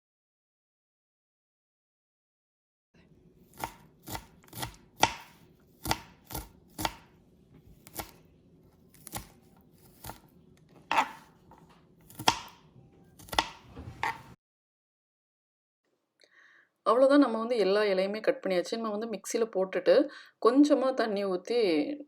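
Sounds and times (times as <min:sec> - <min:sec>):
knife chopping leaves: 0:03.5 - 0:07.1, 0:07.7 - 0:08.2, 0:08.9 - 0:10.3, 0:12.0 - 0:12.6, 0:13.2 - 0:14.3.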